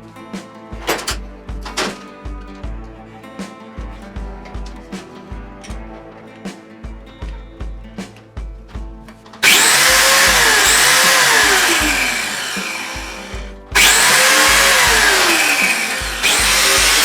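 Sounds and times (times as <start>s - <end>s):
background music with beat: 0.0s - 17.0s
angle grinder cutting: 9.4s - 17.0s.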